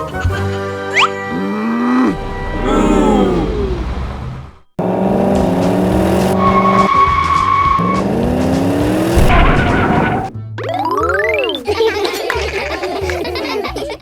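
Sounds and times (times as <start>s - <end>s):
cartoon engine revving: 1.3s - 7.1s
high tyre squeal: 2.1s - 10.3s.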